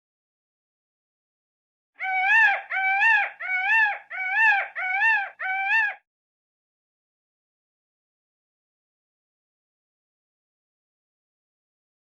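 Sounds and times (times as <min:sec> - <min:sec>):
peacock calling: 0:02.0 - 0:06.0.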